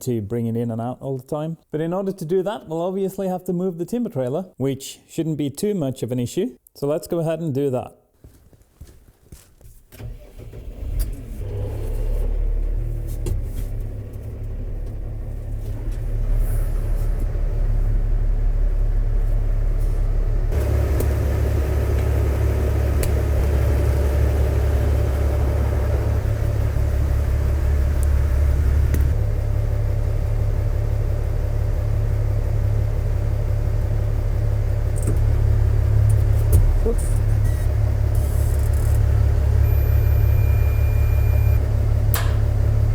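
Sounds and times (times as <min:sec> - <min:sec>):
tractor diesel engine running: 0:10.0 - 0:42.9.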